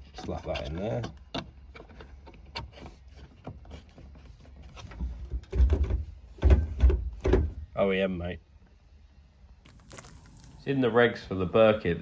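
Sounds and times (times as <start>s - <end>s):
clicks and knocks of car parts: 0.0s - 7.7s
heavy knocks and thuds: 5.5s - 7.6s.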